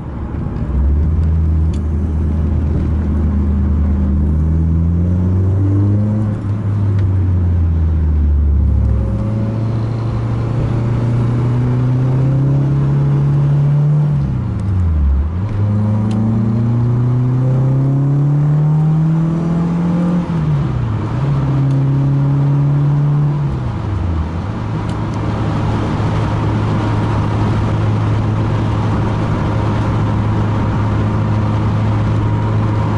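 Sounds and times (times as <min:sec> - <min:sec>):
car engine under power: 0:00.0 - 0:32.9.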